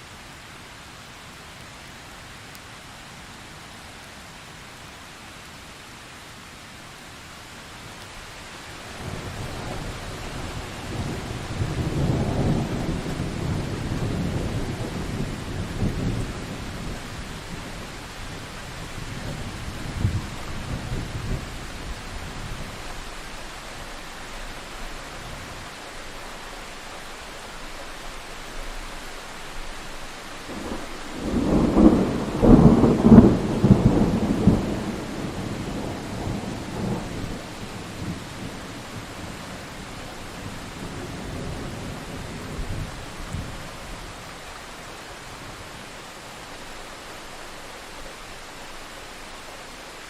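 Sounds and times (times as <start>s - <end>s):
rain hiss: 0.0s - 50.0s
rolling thunder: 9.0s - 22.9s, 30.5s - 39.4s.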